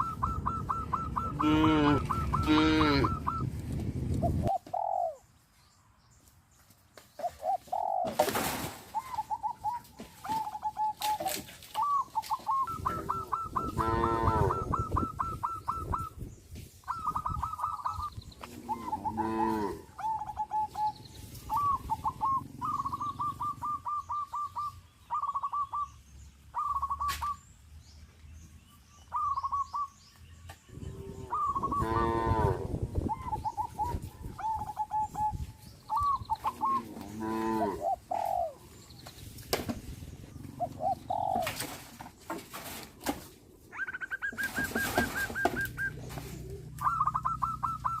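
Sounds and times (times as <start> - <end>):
dove cooing: 0.0 - 5.2, 7.2 - 16.2, 16.8 - 25.9, 26.5 - 27.4, 30.8 - 38.7, 40.3 - 42.0, 43.7 - 48.0
cows mooing: 1.3 - 3.2, 13.6 - 14.7, 18.4 - 19.9, 30.9 - 32.8, 36.7 - 37.9.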